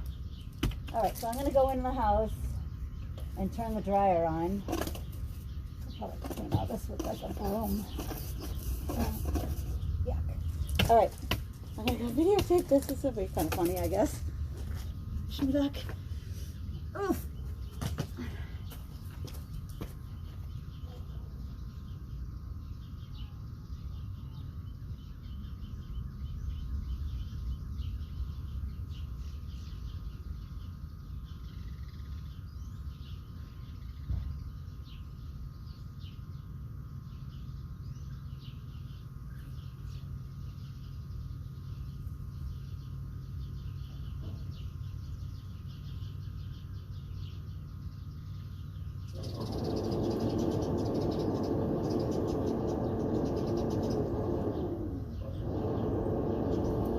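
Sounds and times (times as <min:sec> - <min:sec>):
birds chirping: 0:00.0 - 0:56.9
low outdoor rumble: 0:00.0 - 0:56.9
dryer vent blowing air: 0:49.1 - 0:56.9.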